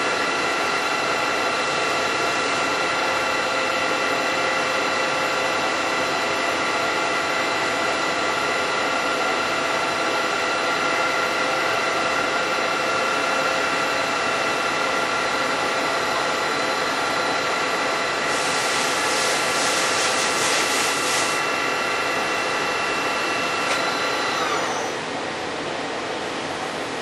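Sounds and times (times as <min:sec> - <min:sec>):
milling machine whine: 0:00.0 - 0:27.0
hiss: 0:18.3 - 0:21.4.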